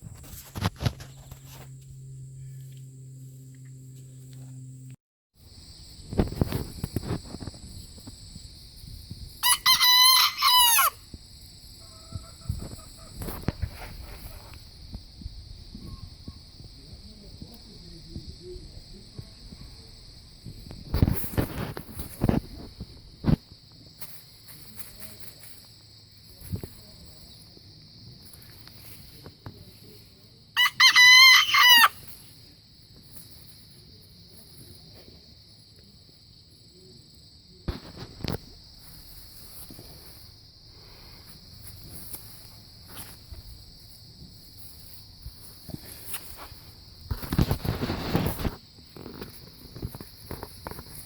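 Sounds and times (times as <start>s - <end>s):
rooster crowing: 9.4s - 11.0s, 30.6s - 32.0s
rustling: 37.8s - 51.0s.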